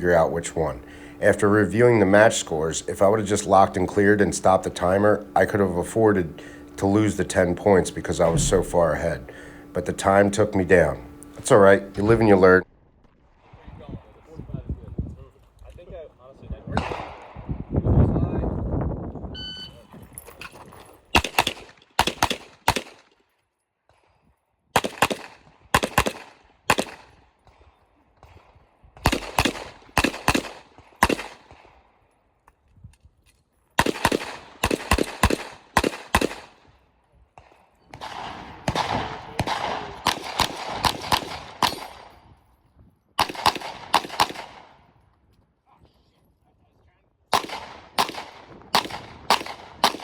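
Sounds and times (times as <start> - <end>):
pistol shots: 8.2 - 9.1, 24.8 - 27.1, 29.0 - 31.6, 33.8 - 36.6, 37.4 - 42.2, 43.2 - 44.8, 47.3 - 50.0.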